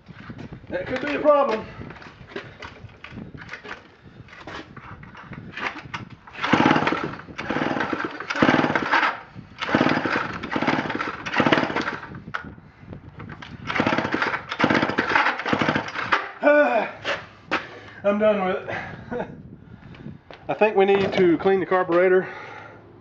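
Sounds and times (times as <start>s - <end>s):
chainsaw being pull-started: 0.9s - 12.2s, 13.2s - 16.4s.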